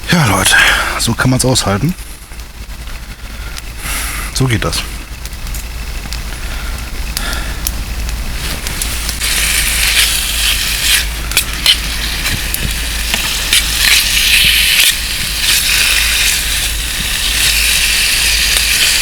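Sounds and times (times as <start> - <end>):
wood fire crackling: 0.0 - 19.0
chicken frying in oil: 8.8 - 19.0.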